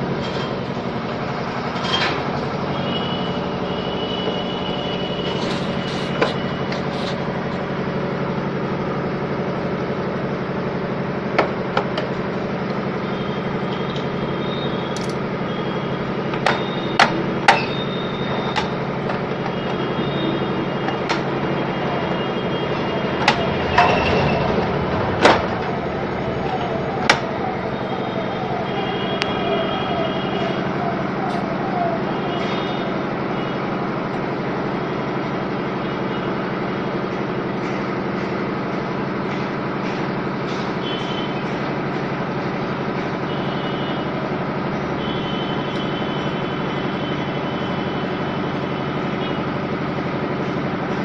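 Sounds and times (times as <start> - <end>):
mechanical motor hum: 0.0 - 51.0.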